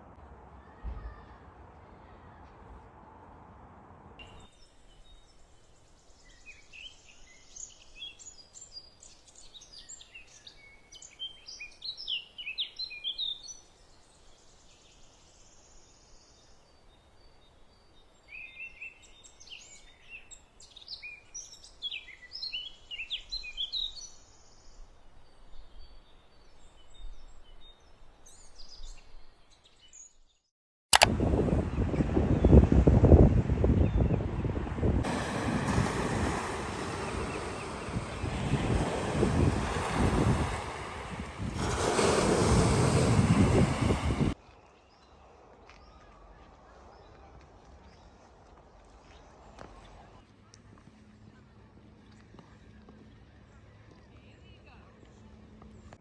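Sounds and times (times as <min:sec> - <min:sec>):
songbird chirping and trilling: 0:04.2 - 0:30.4
faint outdoor hush: 0:35.0 - 0:44.4.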